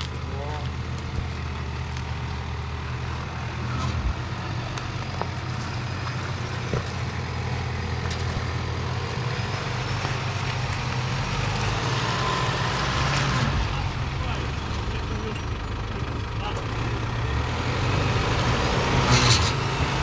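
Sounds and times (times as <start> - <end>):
engine running under load: 0.0 - 20.0.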